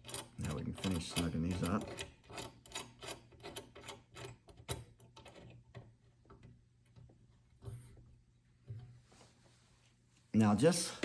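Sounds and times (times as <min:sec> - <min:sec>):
small metal parts clicking: 0:00.0 - 0:05.6.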